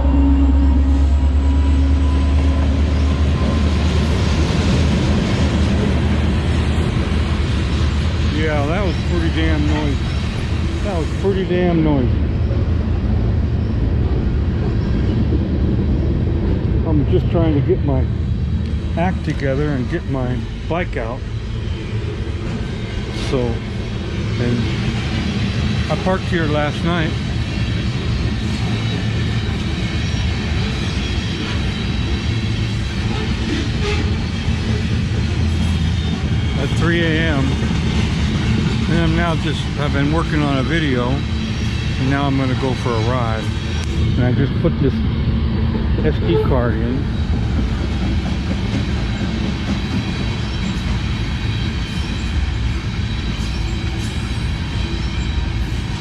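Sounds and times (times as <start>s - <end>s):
freight train rumbling past: 0.0s - 56.0s
high wheel squeal: 8.2s - 12.6s, 19.0s - 56.0s.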